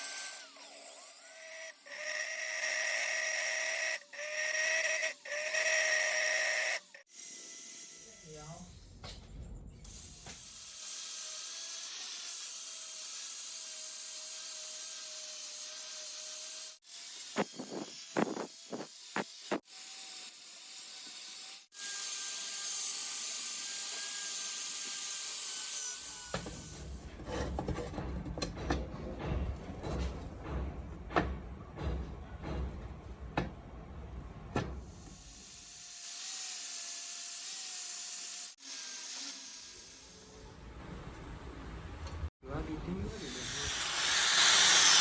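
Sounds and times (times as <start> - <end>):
rough scraping and rubbing: 26.4 - 28.4.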